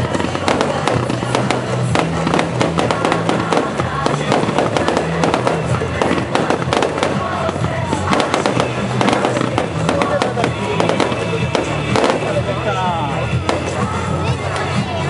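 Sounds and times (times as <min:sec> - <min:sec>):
fireworks bursting and crackling: 0:00.0 - 0:15.0
music playing: 0:00.0 - 0:15.0.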